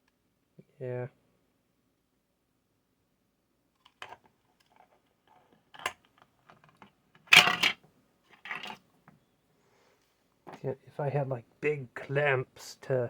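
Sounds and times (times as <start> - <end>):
objects clattering: 3.8 - 8.8
small objects clicking on workbench: 3.8 - 8.8.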